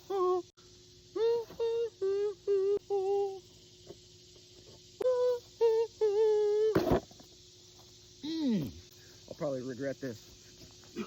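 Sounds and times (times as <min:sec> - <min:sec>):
person humming: 0:00.0 - 0:00.5, 0:01.1 - 0:03.5, 0:05.0 - 0:06.9, 0:08.2 - 0:08.8.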